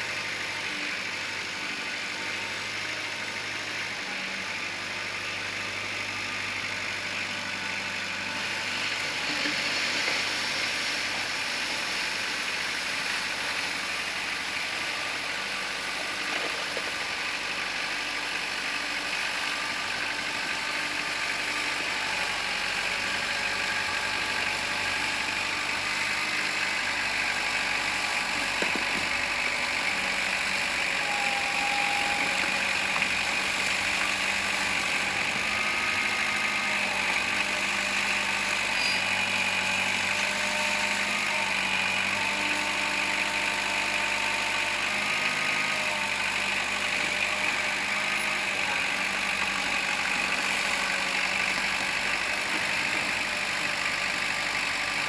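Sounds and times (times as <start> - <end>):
tractor diesel engine running: 0.0 - 55.0.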